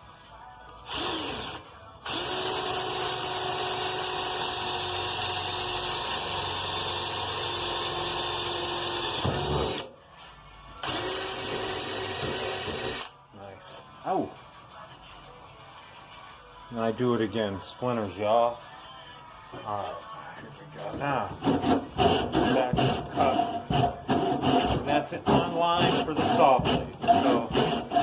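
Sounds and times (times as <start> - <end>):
electric drill boring into wood: 0.9 - 9.9, 10.8 - 13.1.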